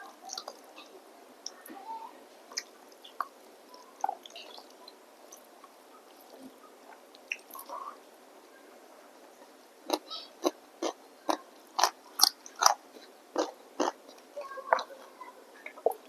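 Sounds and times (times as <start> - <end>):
person chewing with wet smacks: 0.3 - 0.6, 6.2 - 7.7, 9.9 - 14.9.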